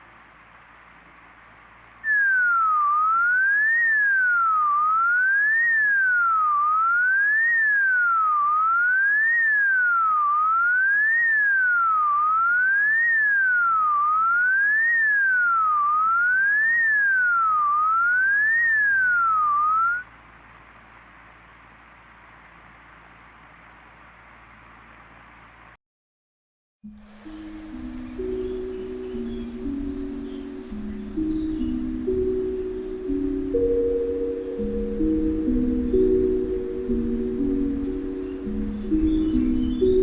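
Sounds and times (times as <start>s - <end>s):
synthesized siren sweeping: 2.6s - 20.0s.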